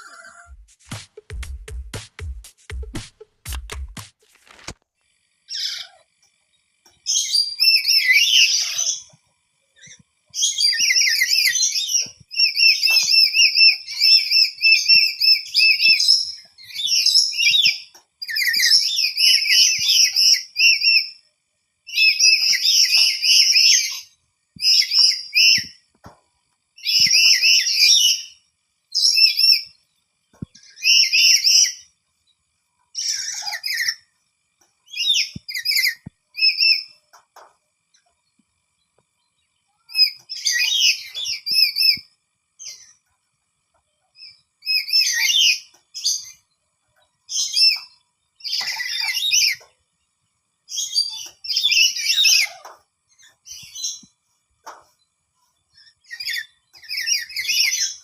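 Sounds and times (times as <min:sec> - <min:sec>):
parrot trilling chatter: 0:00.0 - 0:00.7, 0:05.5 - 0:06.2, 0:33.0 - 0:34.1, 0:50.8 - 0:52.7.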